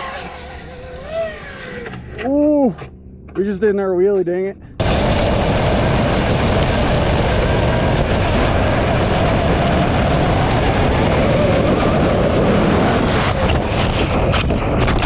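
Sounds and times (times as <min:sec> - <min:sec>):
rc car roaring across ice: 0:00.0 - 0:02.8
high wavering motor whine: 0:00.0 - 0:03.1, 0:04.8 - 0:13.8.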